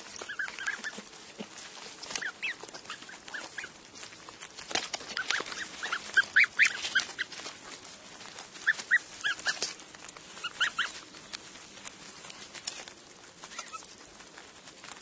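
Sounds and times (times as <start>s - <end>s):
goslings cheeping: 0.0s - 3.8s, 5.1s - 7.4s, 8.6s - 11.1s
light clicks and rustling: 0.1s - 15.0s.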